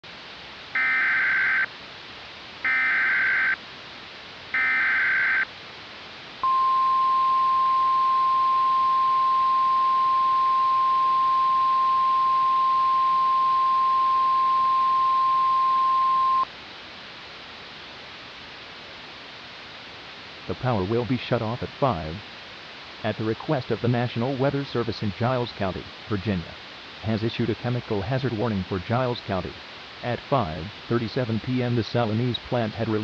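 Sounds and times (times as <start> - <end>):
steady hiss: 0.0 - 15.6, 16.4 - 33.0
digital data tone bursts: 0.8 - 1.7, 2.6 - 3.6, 4.6 - 5.5
steady attention tone: 0.8 - 1.7, 2.6 - 3.6, 4.5 - 5.5, 6.4 - 16.5.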